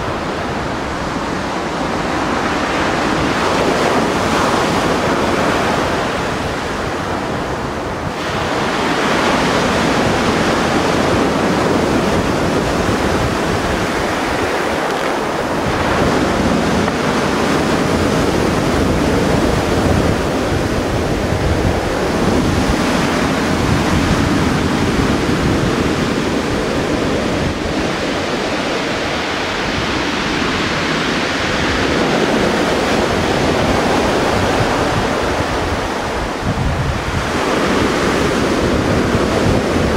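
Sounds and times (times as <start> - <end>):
waves breaking on shore: 0.0 - 39.9
wind buffeting microphone: 0.0 - 39.9.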